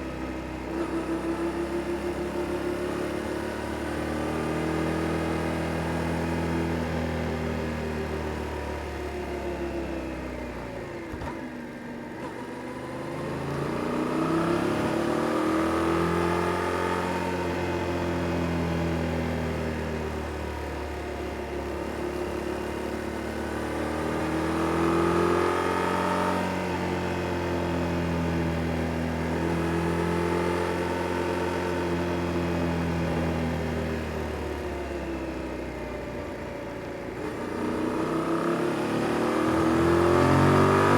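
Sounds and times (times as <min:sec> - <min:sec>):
motorcycle engine revving: 0:37.2 - 0:40.9.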